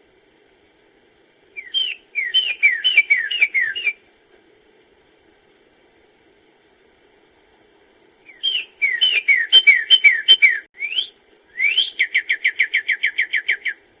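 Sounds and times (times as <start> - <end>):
songbird whistling and trilling: 1.6 - 4.0, 8.2 - 13.8.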